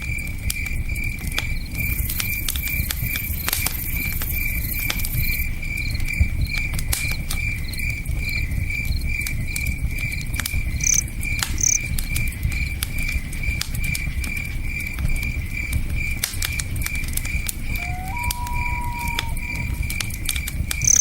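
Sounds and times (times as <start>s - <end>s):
campfire crackling and popping: 0.0s - 21.0s
cricket chirping: 0.0s - 21.0s
higher chirps: 17.7s - 19.8s.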